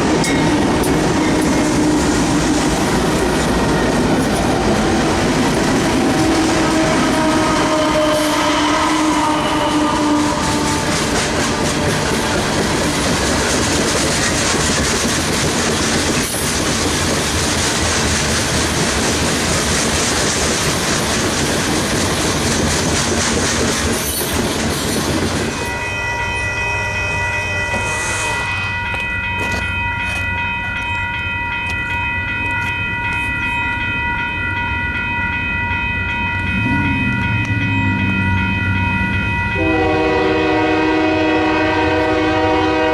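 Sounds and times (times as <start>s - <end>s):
train wheels rolling and rumbling: 0.0s - 25.8s, 27.1s - 42.9s
locomotive horn blast: 6.1s - 12.3s, 39.5s - 42.9s
steady chord of high tones: 25.4s - 42.9s.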